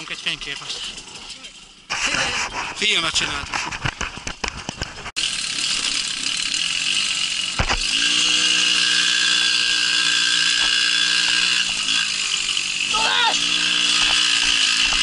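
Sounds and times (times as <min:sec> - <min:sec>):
moped engine running: 0:03.8 - 0:15.0.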